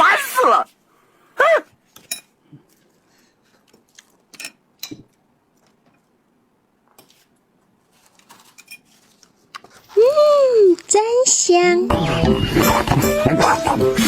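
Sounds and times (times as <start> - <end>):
person eating: 2.4 - 4.3.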